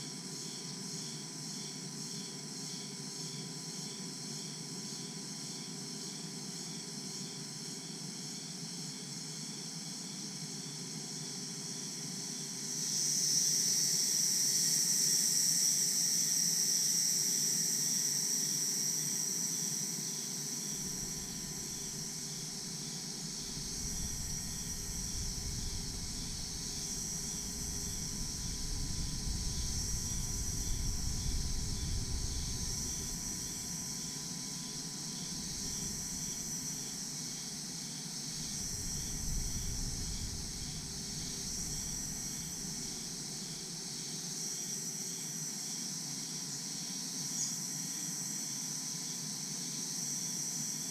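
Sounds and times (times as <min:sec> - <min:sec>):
crickets trilling: 0:00.0 - 0:50.9
insect chorus buzzing: 0:00.0 - 0:50.9
low rumble: 0:23.6 - 0:33.2.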